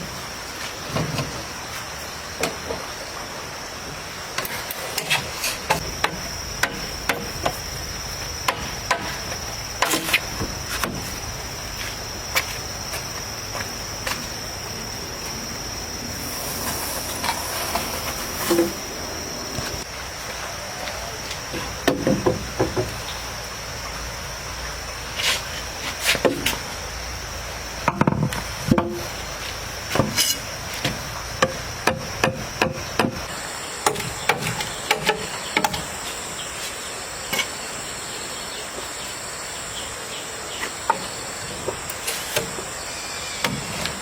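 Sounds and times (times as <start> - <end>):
high-pitched insect drone: 3.0 - 25.9
sharp knocks and strikes: 4.4 - 7.6, 8.4 - 9.2, 21.8 - 23.0, 27.8 - 29.0, 29.9 - 33.2.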